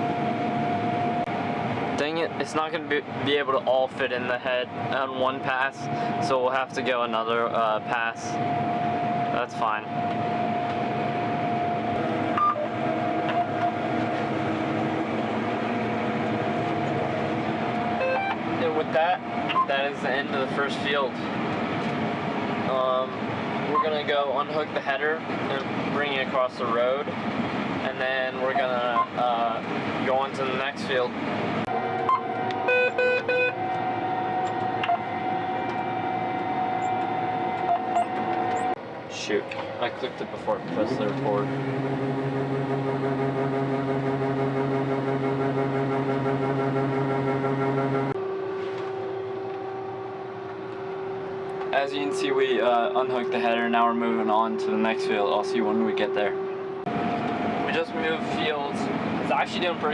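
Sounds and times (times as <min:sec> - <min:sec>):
combine harvester drone: 0:00.0 - 0:59.9
high whine: 0:00.0 - 0:59.9
short beep: 0:32.0 - 0:38.8.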